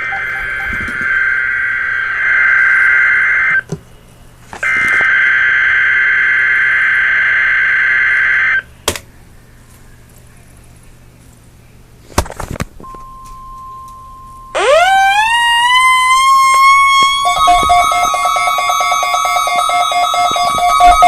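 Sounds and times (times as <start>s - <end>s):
tone sweeping up in pitch: 0.0s - 1.4s, 14.5s - 21.0s
steady electronic beep: 0.0s - 1.6s, 16.6s - 21.0s
low pulsing siren-like tones: 0.0s - 3.6s, 14.4s - 21.0s.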